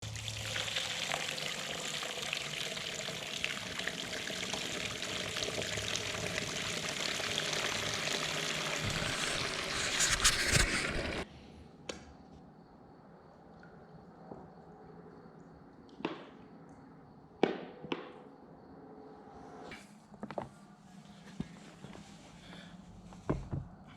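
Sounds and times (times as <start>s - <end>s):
water running and splashing: 0.0s - 11.2s.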